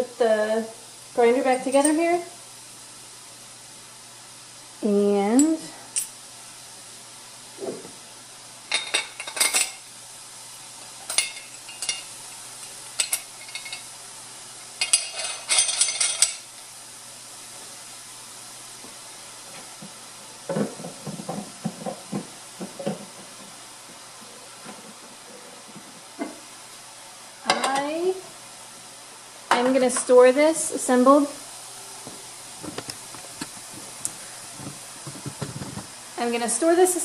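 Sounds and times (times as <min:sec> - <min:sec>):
metal parts clinking: 0:14.8 - 0:16.4.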